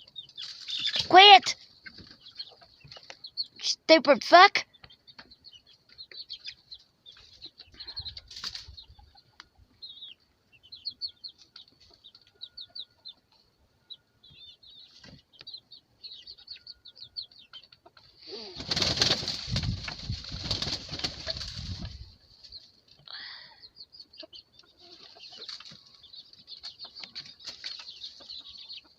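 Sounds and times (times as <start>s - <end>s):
baby chicks peeping: 0.0s - 28.9s
chicken wings flapping: 8.2s - 8.8s, 18.3s - 22.1s.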